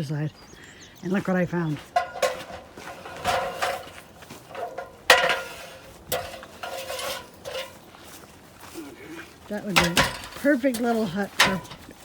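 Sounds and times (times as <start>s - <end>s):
metallic clanks and rattles: 1.7s - 8.3s, 9.5s - 12.0s.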